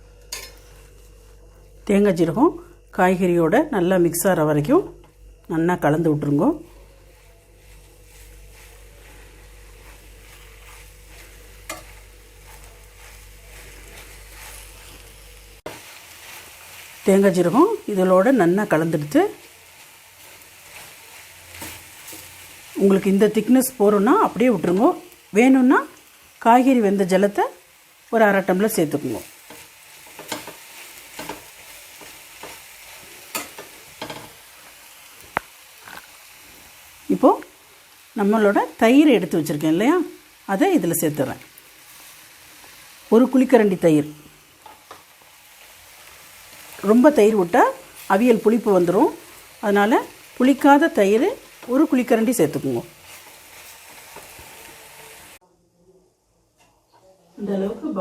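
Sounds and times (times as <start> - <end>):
light sizzle: 0.0 - 55.4
spoon scraping a pan: 0.3 - 1.0, 6.6 - 17.0, 19.7 - 22.6, 29.2 - 34.5
spoon tapping pan: 10.6 - 13.1, 33.3 - 34.4.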